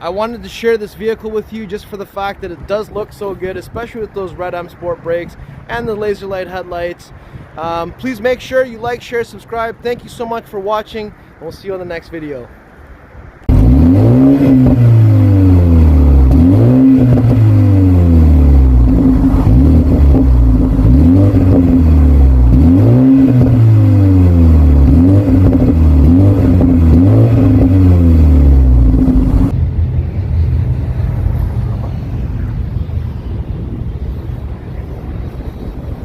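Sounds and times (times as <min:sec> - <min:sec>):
car engine revving: 0:13.5 - 0:35.0.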